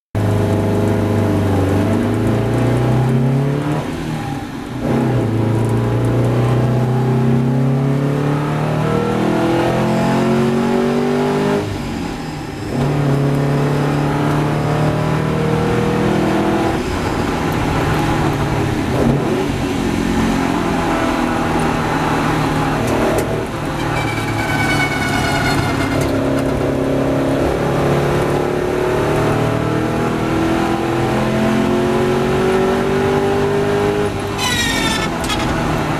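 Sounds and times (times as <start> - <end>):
racing engine revving: 17.8 - 35.9.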